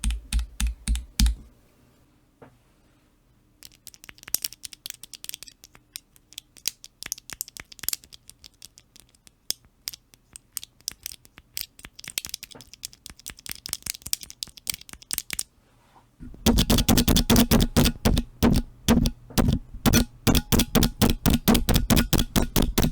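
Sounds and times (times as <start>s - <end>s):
keyboard keys clacking: 16.2s - 22.9s.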